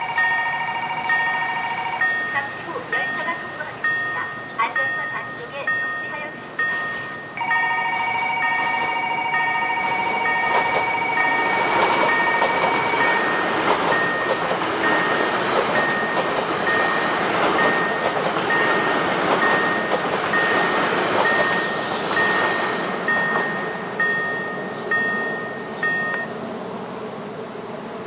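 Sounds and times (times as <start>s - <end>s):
level-crossing warning bell: 0.0s - 26.4s
train rumbling over crossing: 0.0s - 28.0s
long held tone: 19.5s - 26.4s.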